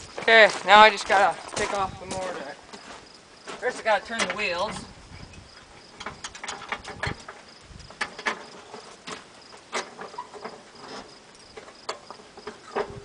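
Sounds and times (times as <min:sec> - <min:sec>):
cricket chirping: 0:00.0 - 0:13.0
clicks and knocks of hands working: 0:06.0 - 0:13.0.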